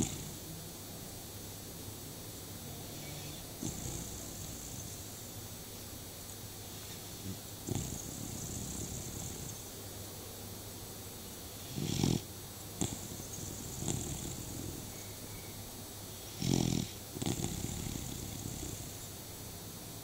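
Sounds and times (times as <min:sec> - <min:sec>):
dog snoring: 0:00.0 - 0:00.5, 0:02.6 - 0:05.2, 0:06.7 - 0:09.8, 0:11.6 - 0:15.0, 0:16.1 - 0:19.2
soft breathing noises: 0:00.0 - 0:00.5, 0:02.6 - 0:05.6, 0:06.5 - 0:09.8, 0:11.4 - 0:19.3.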